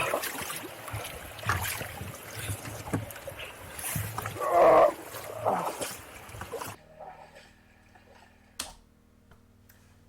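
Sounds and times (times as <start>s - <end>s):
water splashing in a river: 0.0s - 6.8s.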